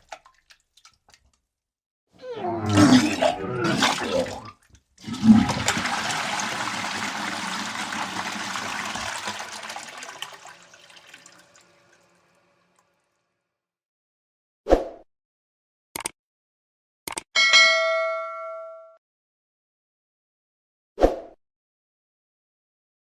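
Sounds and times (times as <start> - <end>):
person retching: 2.2 - 7.2
toilet flushing: 2.5 - 12.9.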